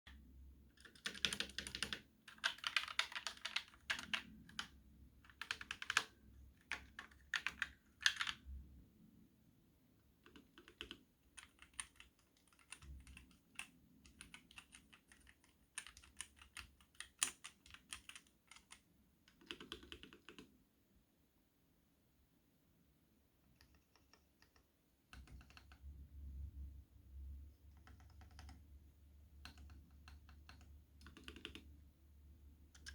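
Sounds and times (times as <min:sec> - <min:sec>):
mechanical keyboard typing: 0:00.7 - 0:08.4, 0:10.2 - 0:20.5, 0:23.5 - 0:25.9, 0:27.7 - 0:28.6, 0:29.4 - 0:31.7, 0:32.7 - 0:32.9.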